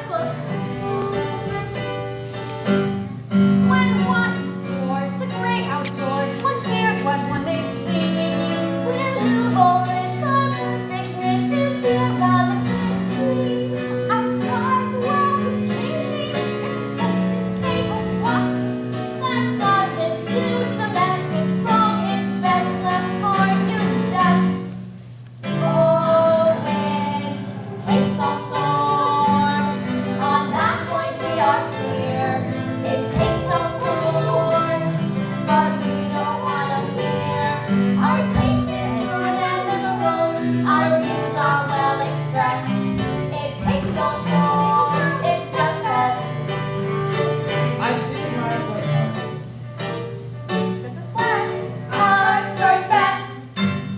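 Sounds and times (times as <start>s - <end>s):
voices singing musical-theatre song: 0.0s - 2.6s, 3.6s - 24.7s, 25.5s - 49.3s, 50.8s - 53.6s
instrumental accompaniment: 0.0s - 53.9s.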